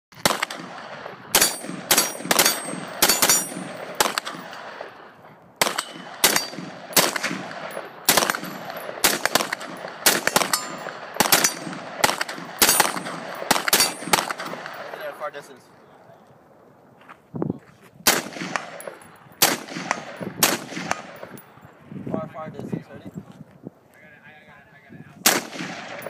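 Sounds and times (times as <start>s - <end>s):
rifle shots echoing: 0.2s - 15.3s, 18.0s - 21.6s, 25.2s - 26.0s.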